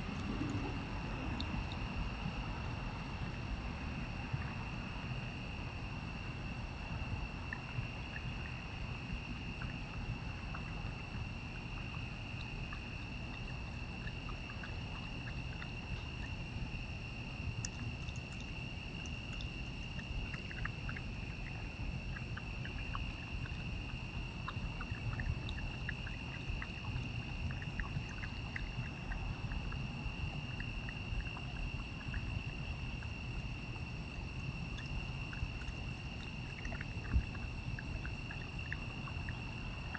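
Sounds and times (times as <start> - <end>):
low rumble: 0.0 - 5.1
insect chorus trilling: 0.0 - 39.9
faint clicks: 17.6 - 21.0.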